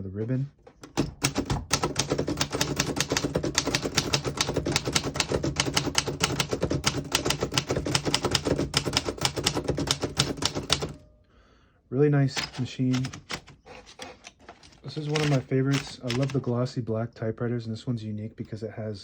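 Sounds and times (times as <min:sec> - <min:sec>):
typewriter typing fast: 0:00.8 - 0:11.0, 0:12.4 - 0:16.5.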